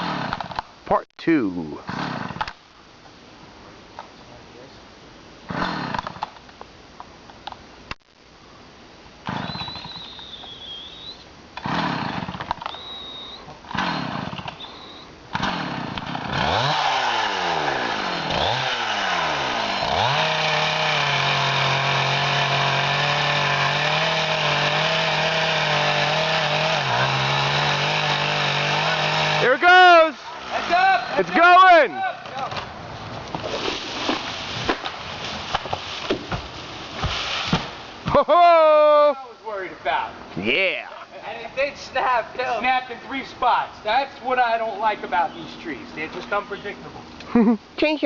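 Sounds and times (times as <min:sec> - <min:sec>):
chainsaw engine revving: 0:00.0 - 0:00.6, 0:01.8 - 0:02.5, 0:05.5 - 0:06.2, 0:11.6 - 0:14.7, 0:15.3 - 0:31.4.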